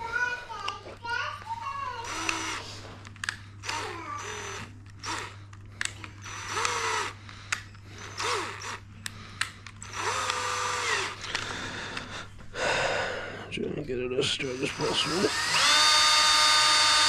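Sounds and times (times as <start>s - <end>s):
sharp clicks: 2.0s - 12.1s
power drill motor whirring: 2.0s - 12.2s, 14.4s - 17.0s.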